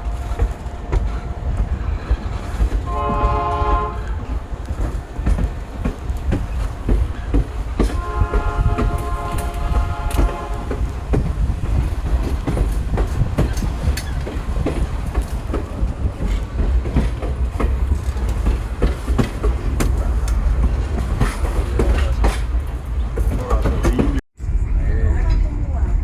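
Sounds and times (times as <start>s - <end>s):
train wheels clacking over track: 0.0s - 24.2s
train rumbling on rails: 0.0s - 26.0s.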